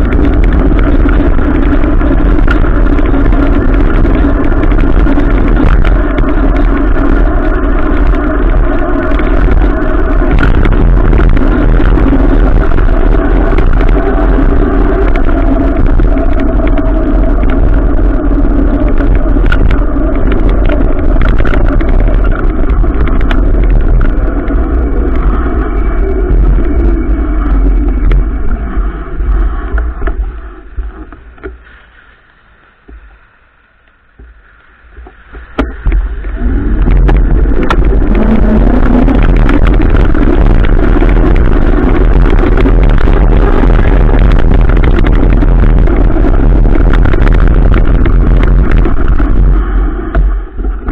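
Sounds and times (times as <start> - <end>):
wind and motorcycle engine noise: 0.0 - 50.9.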